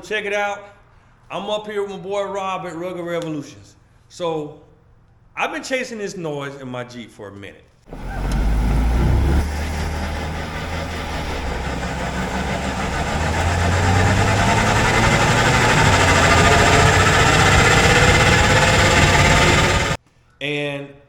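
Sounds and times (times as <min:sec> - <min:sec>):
drivetrain drone: 0:07.9 - 0:20.0
rear axle whining: 0:07.9 - 0:20.0.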